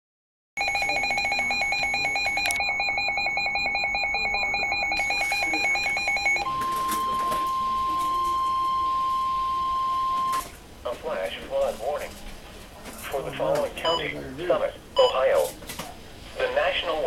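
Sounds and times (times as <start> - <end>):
rapid pulsing beeps: 0.6 - 10.4
steady warning alert tone: 0.6 - 10.5.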